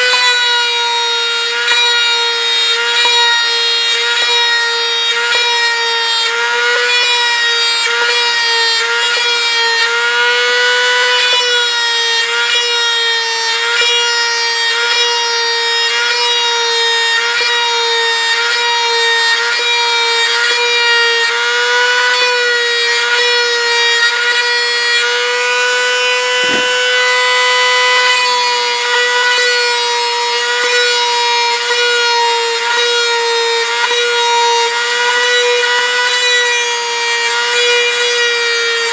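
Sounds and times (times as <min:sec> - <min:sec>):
rotary tool high whine: 0:22.2 - 0:38.9.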